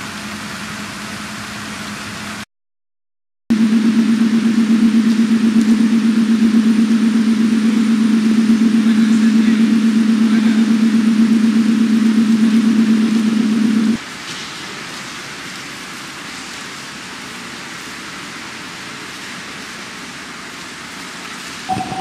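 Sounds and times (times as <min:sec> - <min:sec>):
pulsing low hum: 0:03.5 - 0:14.0, 0:21.7 - 0:22.0.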